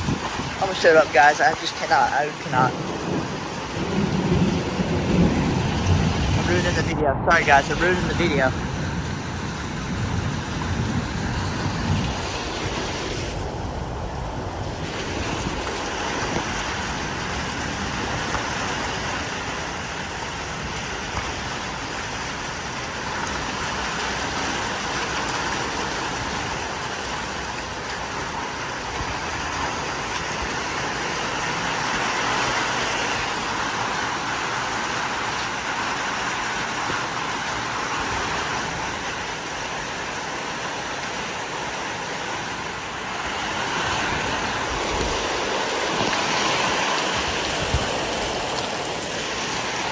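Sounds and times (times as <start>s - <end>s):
heavy rain: 0.0s - 49.9s
strong wind gusts: 0.0s - 49.9s.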